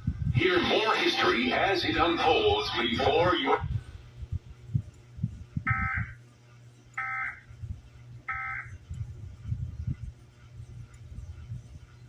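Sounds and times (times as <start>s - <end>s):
low hum: 0.0s - 12.0s
buzzy digital tone bursts: 0.4s - 3.5s.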